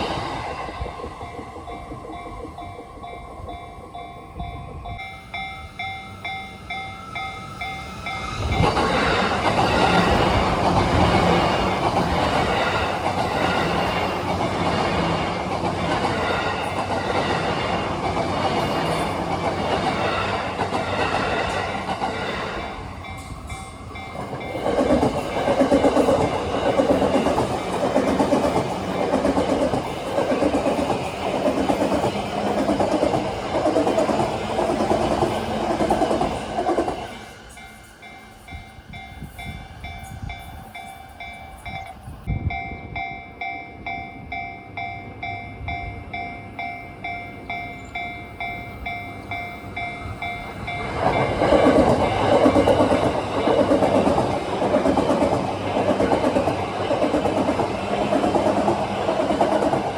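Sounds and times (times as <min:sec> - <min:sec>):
level-crossing bell ringing: 0:00.0 - 0:09.3, 0:18.7 - 0:59.9
electric train passing: 0:00.0 - 0:59.9
wheels clacking over rail joints: 0:08.0 - 0:37.2, 0:49.3 - 0:59.9.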